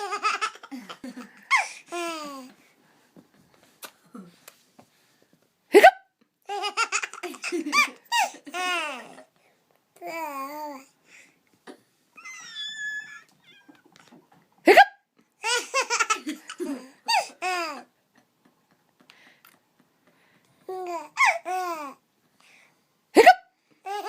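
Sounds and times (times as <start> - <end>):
loud hiccup: 5.7 - 6.1, 14.7 - 15.0, 23.2 - 23.5
high-pitched laughter: 12.2 - 14.9.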